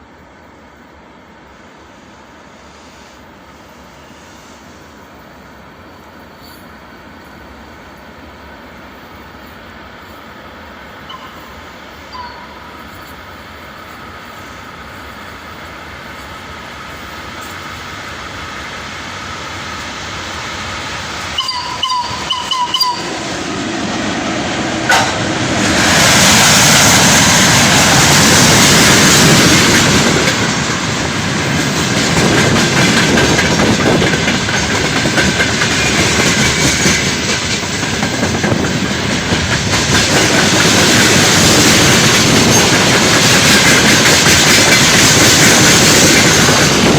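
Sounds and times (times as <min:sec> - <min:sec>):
train wheels clattering over rail joints: 0:24.8 - 0:46.9.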